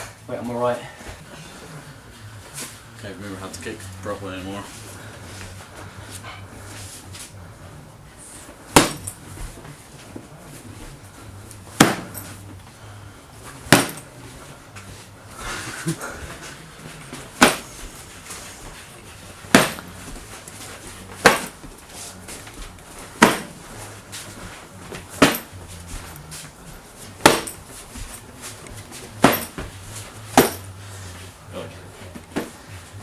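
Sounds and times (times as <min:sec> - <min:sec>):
kicks smacking a striking pad: 0:08.7 - 0:09.2, 0:11.8 - 0:12.3, 0:13.7 - 0:14.1, 0:17.3 - 0:17.8, 0:19.5 - 0:20.2, 0:21.2 - 0:21.7, 0:23.1 - 0:23.7, 0:25.1 - 0:25.6, 0:27.2 - 0:27.7, 0:29.2 - 0:29.7, 0:30.3 - 0:30.7.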